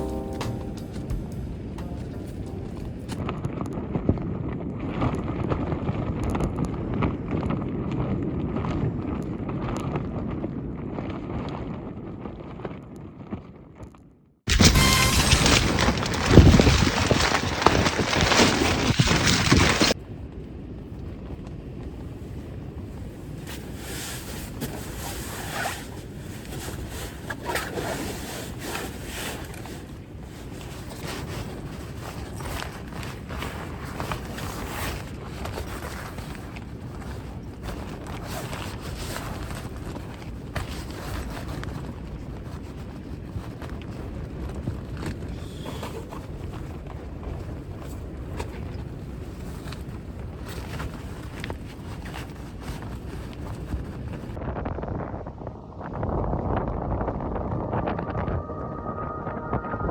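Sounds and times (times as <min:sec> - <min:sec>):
tarp flapping and snapping: 0:14.5 - 0:20.0, 0:23.5 - 0:45.2, 0:45.8 - 0:54.4
wind buffeting microphone: 0:15.3 - 0:40.9, 0:41.5 - 0:59.9.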